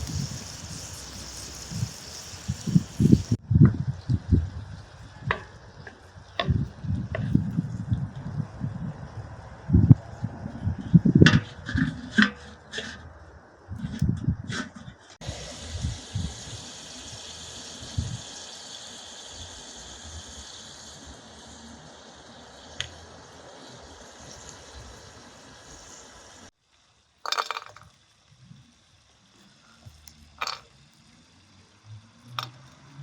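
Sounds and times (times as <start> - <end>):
water running: 0.0 - 3.4.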